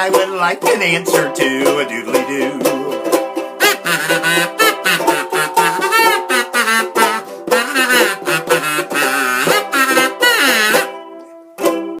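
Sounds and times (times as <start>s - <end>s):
strummed ukulele: 0.0s - 12.0s
kazoo playing a melody: 2.5s - 11.0s.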